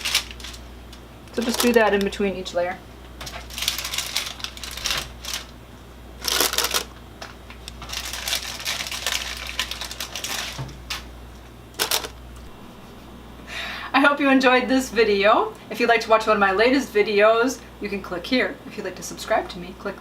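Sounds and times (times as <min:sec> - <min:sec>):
wax paper crinkling: 0:00.0 - 0:02.1, 0:03.2 - 0:05.6, 0:06.2 - 0:11.1.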